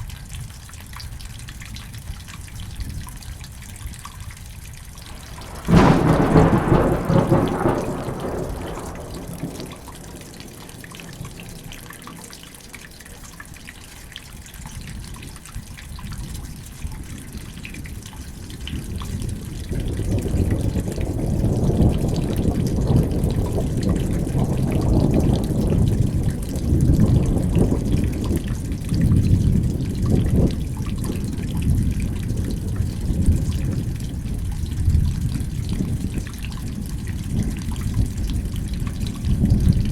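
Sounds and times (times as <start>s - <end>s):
steady rain: 0.0s - 39.9s
low rolling thunder rumble: 4.8s - 14.0s, 17.2s - 39.9s
sharp thunderclap: 5.0s - 12.7s, 19.8s - 28.4s.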